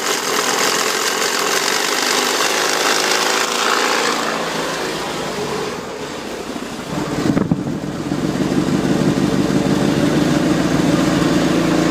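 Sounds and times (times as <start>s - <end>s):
engine knocking: 0.0s - 4.2s
engine crackle: 0.0s - 11.9s
car engine revving: 1.0s - 11.9s.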